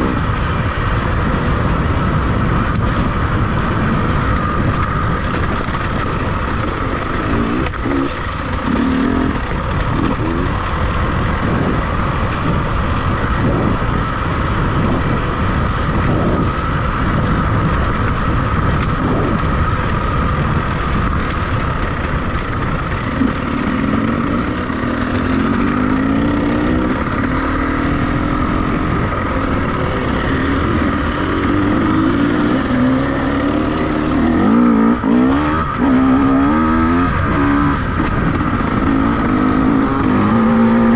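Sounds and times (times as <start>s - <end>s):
off-road vehicle engine revving: 1.2s - 12.6s, 22.0s - 40.9s.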